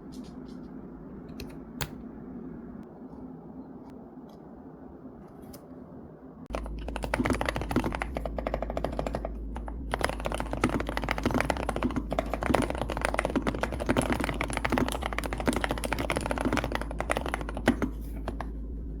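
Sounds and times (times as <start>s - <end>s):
typing on mechanical keyboard: 6.5s - 18.5s.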